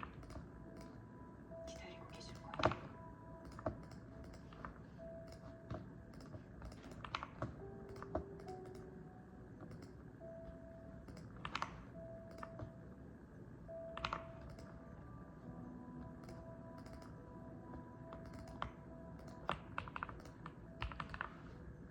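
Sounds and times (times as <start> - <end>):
soft background music: 0.0 - 21.9
mechanical keyboard typing: 1.7 - 5.5, 6.1 - 8.9, 9.6 - 10.0, 11.0 - 12.6, 14.0 - 14.8, 16.2 - 17.2, 18.1 - 21.4.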